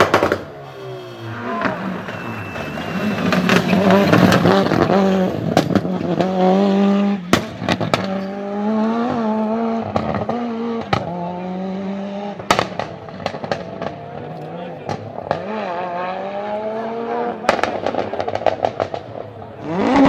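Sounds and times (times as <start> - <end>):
exhaust pops and bangs: 0.0 - 0.5, 3.2 - 6.3, 7.3 - 8.3, 12.4 - 14.0, 17.4 - 20.0
car engine revving high: 0.0 - 20.0.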